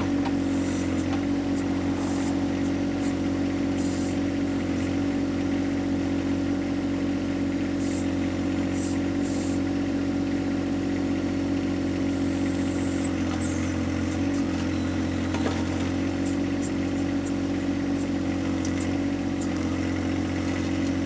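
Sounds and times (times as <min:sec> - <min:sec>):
tractor diesel engine running: 0:00.0 - 0:21.0
short high hisses: 0:00.4 - 0:04.9.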